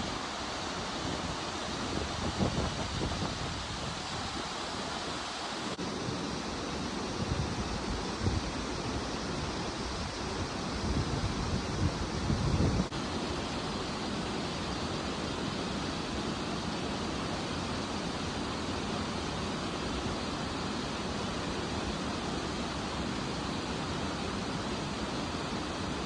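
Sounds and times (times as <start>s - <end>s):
wind buffeting microphone: 1.9s - 4.1s, 10.0s - 12.9s.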